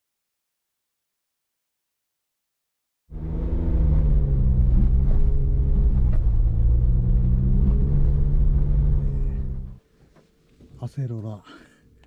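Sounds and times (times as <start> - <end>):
car engine drone: 3.1 - 9.8
road rumble: 3.1 - 9.8.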